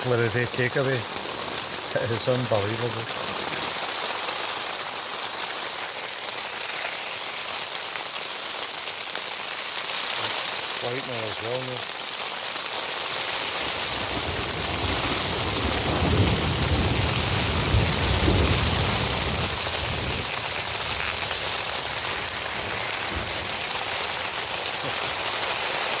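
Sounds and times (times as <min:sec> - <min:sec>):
heavy rain on tent fabric: 0:00.0 - 0:26.0
low roll of thunder: 0:13.8 - 0:25.2.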